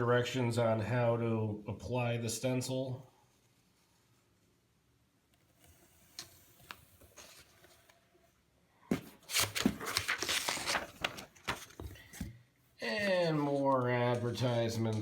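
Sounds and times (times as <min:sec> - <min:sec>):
paper rustling and crinkling: 0:05.6 - 0:08.0, 0:08.9 - 0:12.4.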